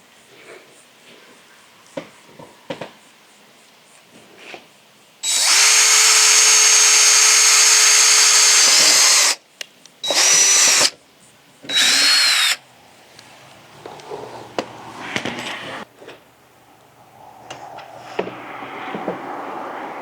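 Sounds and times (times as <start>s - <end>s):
power drill running: 5.2s - 9.4s, 10.0s - 10.9s, 11.7s - 12.6s.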